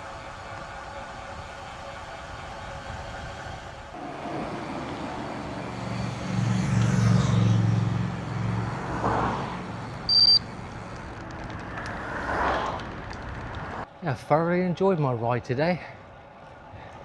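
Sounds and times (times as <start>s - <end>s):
vehicle passing: 4.0s - 14.0s
short high electronic beep: 10.1s - 10.4s.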